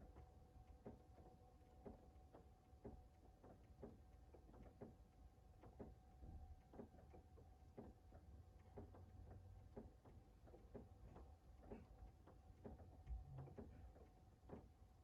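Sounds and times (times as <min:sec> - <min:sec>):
low steady hum: 0:09.5 - 0:15.0.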